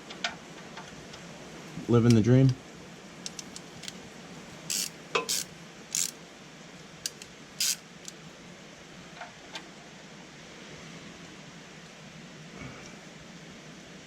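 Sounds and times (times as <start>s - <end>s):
metal tools scraping and clicking: 4.7s - 6.1s.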